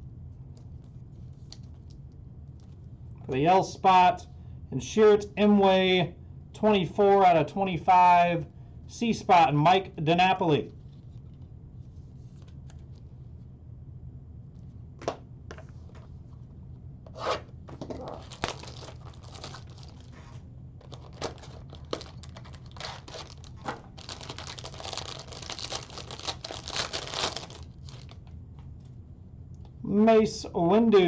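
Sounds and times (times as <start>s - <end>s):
wrapper crinkling and tearing: 17.9s - 28.3s.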